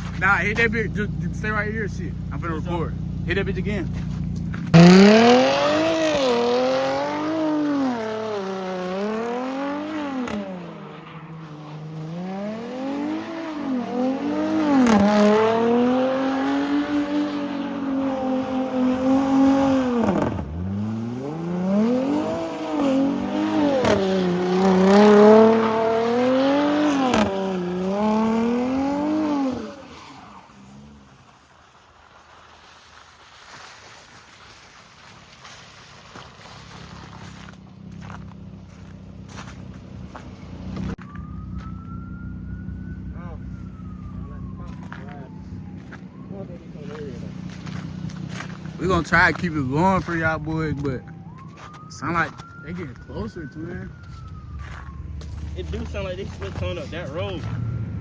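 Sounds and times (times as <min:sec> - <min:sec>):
car engine revving hard: 0:01.0 - 0:30.8.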